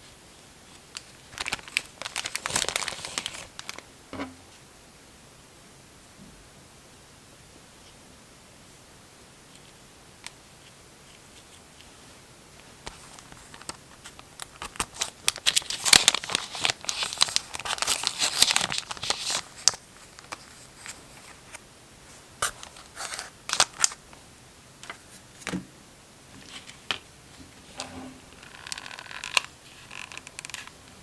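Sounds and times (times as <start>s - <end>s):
paper crinkling and tearing: 0.9s - 3.8s, 12.9s - 21.3s, 22.4s - 24.0s.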